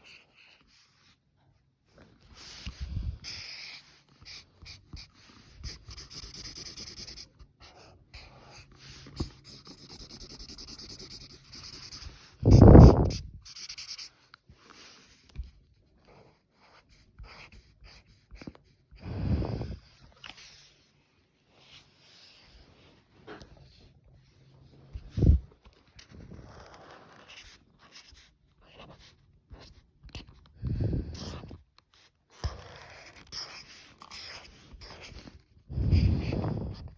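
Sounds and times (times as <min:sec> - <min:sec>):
scratchy coloring strokes: 0:02.4 - 0:15.2, 0:32.4 - 0:36.1
heavy breathing: 0:19.0 - 0:19.9.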